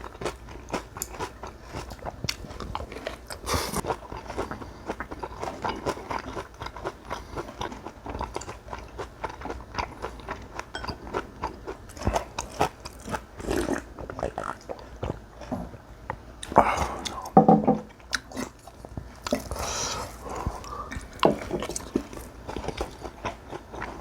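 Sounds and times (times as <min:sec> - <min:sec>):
person chewing crunchy food: 0:00.0 - 0:24.0.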